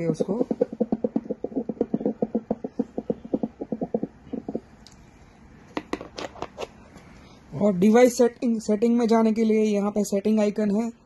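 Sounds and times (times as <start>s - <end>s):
doppler heartbeat pulsing: 0.0s - 4.7s.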